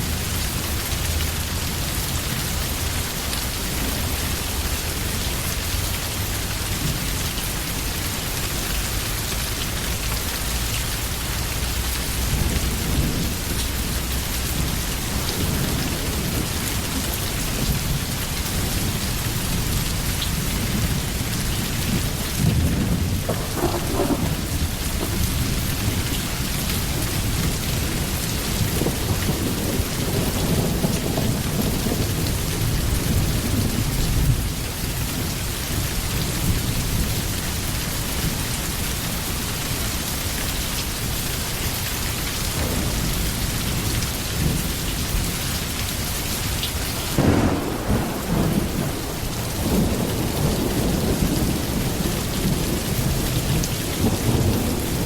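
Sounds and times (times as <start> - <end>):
heavy rain: 0.0 - 55.0
deep rolling thunder: 11.7 - 35.3, 42.5 - 45.7, 47.0 - 55.0
sharp thunder crack: 22.4 - 32.2, 42.6 - 45.3, 47.1 - 53.2.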